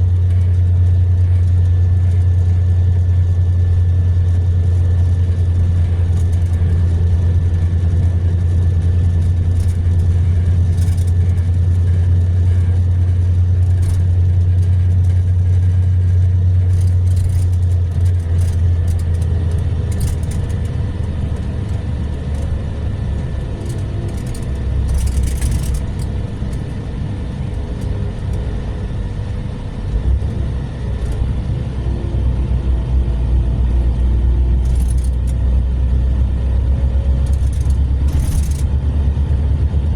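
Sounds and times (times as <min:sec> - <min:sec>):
diesel engine droning: 0:00.0 - 0:39.9
road noise: 0:00.0 - 0:39.9
light rattles: 0:04.1 - 0:28.4, 0:34.6 - 0:35.4, 0:37.2 - 0:38.9.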